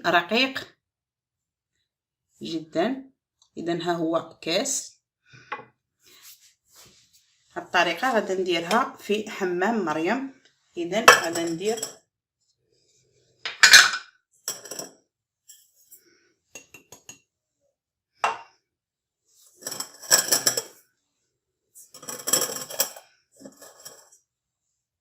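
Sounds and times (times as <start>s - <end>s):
pots and utensils clattering: 11.1s - 12.0s, 13.5s - 14.9s, 19.6s - 20.8s, 21.9s - 24.2s.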